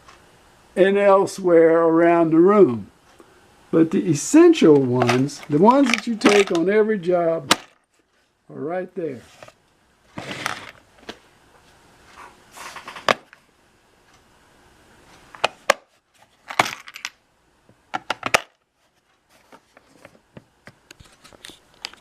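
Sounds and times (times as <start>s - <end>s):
tools clicking and knocking in toolbox: 4.8s - 6.7s.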